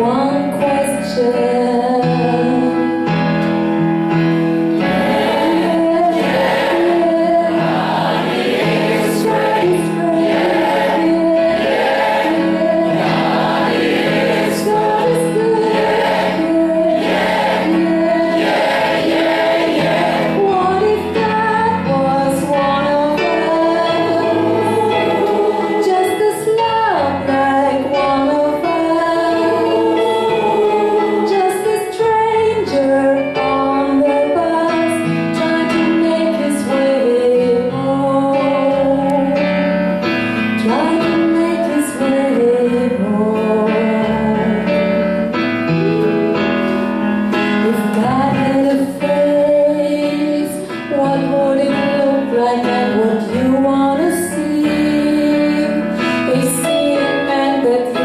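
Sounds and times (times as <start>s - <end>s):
instrumental accompaniment: 0.0s - 58.0s
choir singing: 4.7s - 21.3s, 22.2s - 32.7s.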